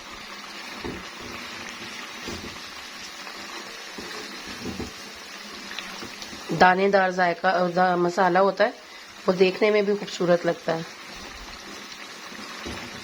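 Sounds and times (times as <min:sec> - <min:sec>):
food sizzling in pot: 0:00.0 - 0:13.0
soft knocks: 0:04.0 - 0:05.0.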